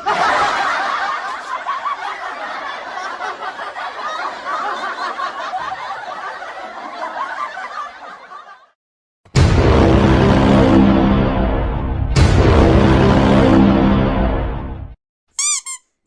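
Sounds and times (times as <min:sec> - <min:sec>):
people laughing: 0:00.0 - 0:08.8
music: 0:09.3 - 0:15.0.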